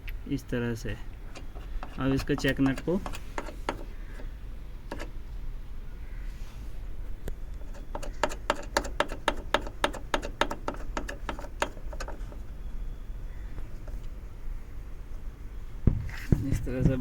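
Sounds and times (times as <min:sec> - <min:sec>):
spanner clicking on a nut: 0:01.3 - 0:04.2, 0:04.9 - 0:05.2, 0:07.6 - 0:12.4.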